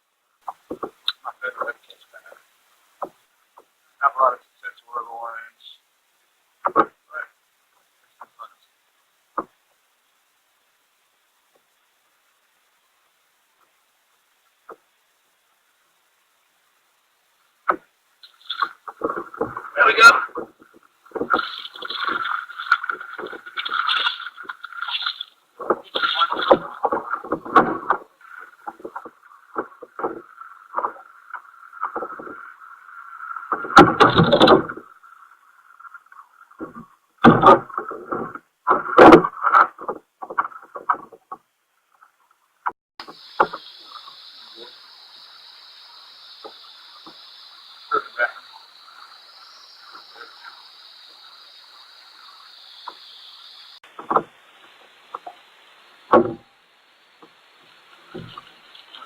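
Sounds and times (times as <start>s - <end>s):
faint steady hum: 0.0s - 59.0s
muffled knocks and bumps: 56.1s - 56.4s.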